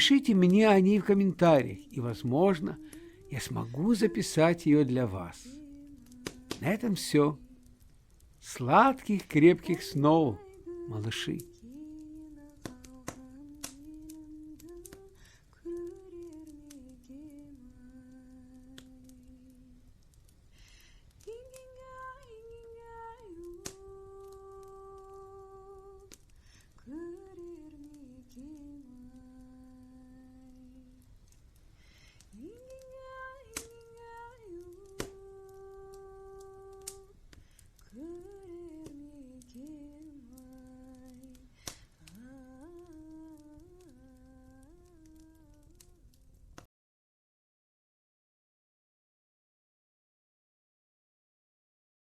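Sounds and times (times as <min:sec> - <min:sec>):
wood fire crackling: 0:00.0 - 0:46.7
person humming a lullaby: 0:32.3 - 0:37.1, 0:37.9 - 0:46.1.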